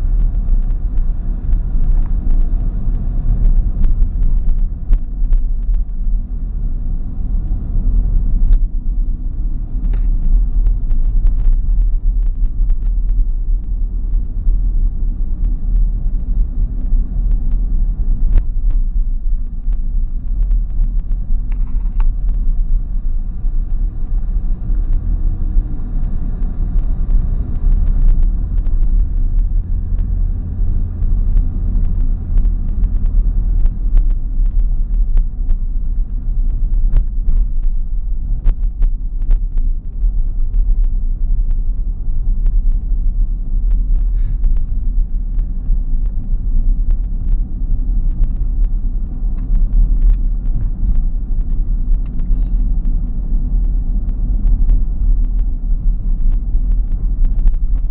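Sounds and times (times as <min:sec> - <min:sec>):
car driving rumble: 0:00.0 - 0:57.9
small clicks and knocks: 0:21.5 - 0:22.5.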